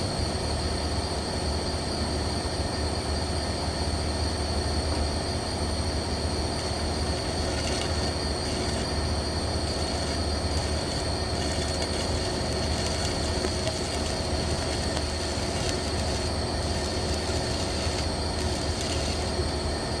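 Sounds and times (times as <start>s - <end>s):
low electrical hum: 5.3s - 20.0s
welding arc hissing: 6.5s - 19.7s
high whine: 6.6s - 19.6s.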